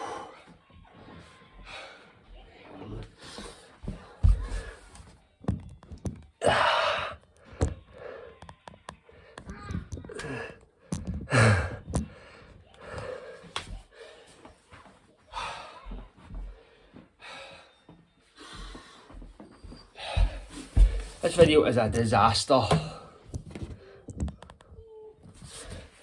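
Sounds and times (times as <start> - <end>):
man panting and gasping: 0.0 - 0.6, 6.4 - 7.2, 10.2 - 14.3, 20.0 - 21.2
thuds of hands and feet on floor: 3.3 - 6.3, 18.6 - 21.6.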